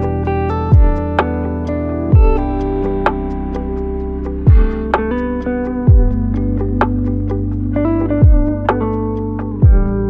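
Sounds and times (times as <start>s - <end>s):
plucked guitar-like melody: 0.0s - 10.0s
deep falling kick drum: 0.7s - 1.2s, 2.1s - 2.6s, 4.5s - 5.1s, 5.9s - 6.3s, 8.2s - 8.7s, 9.6s - 10.0s
ticking hi-hat: 2.1s - 10.0s.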